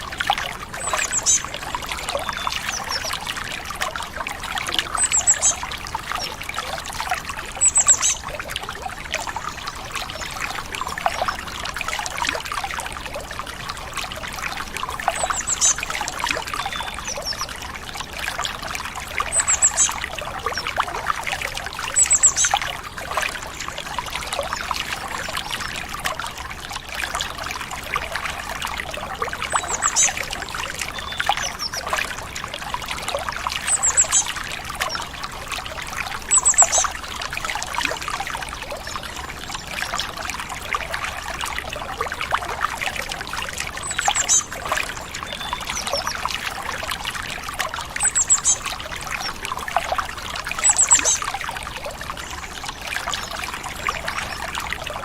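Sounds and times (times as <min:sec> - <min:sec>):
stream water trickling: 0:00.0 - 0:55.0
bird chirps: 0:04.7 - 0:05.6, 0:07.6 - 0:08.2, 0:48.0 - 0:48.6, 0:50.6 - 0:51.2.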